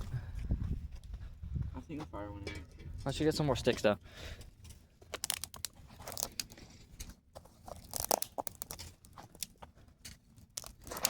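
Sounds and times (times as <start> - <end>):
dry sticks and leaves crunching: 5.0 - 11.0.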